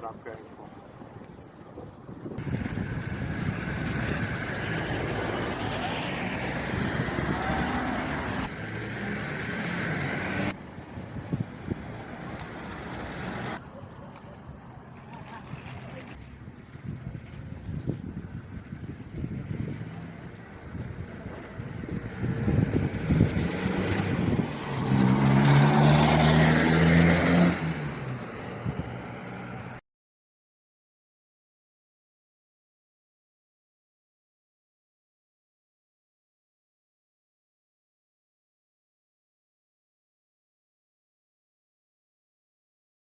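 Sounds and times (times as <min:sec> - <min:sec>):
street traffic noise: 0:00.0 - 0:29.8
motor vehicle passing by: 0:02.4 - 0:17.0, 0:18.2 - 0:29.8.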